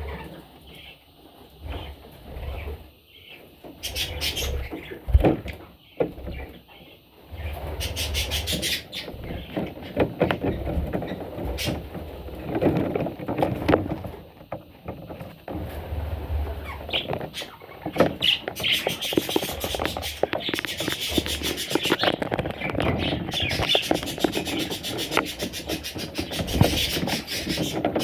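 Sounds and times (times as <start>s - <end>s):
bird chicks squeaking and cheeping: 0.0s - 12.0s, 16.4s - 28.0s
rustling: 7.2s - 28.0s.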